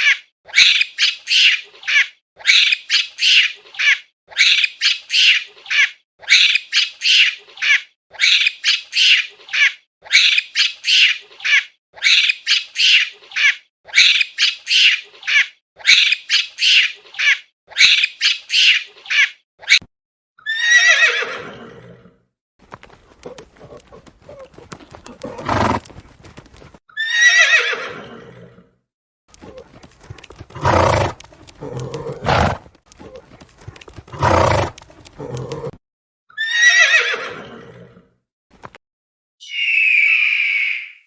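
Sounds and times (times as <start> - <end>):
bird squawking: 0.0 - 19.4, 39.4 - 41.0
horse whinnying: 20.4 - 22.1, 26.9 - 28.6, 36.3 - 38.0, 39.4 - 41.0.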